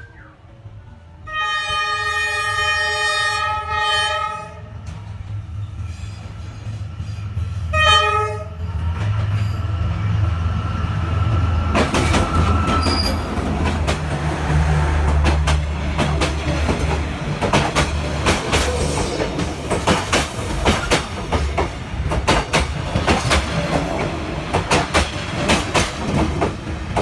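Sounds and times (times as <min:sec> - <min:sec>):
low train rumble: 0:00.0 - 0:27.0
train horn blasts: 0:01.2 - 0:04.8, 0:07.7 - 0:08.8
wheels clattering on track: 0:11.7 - 0:27.0.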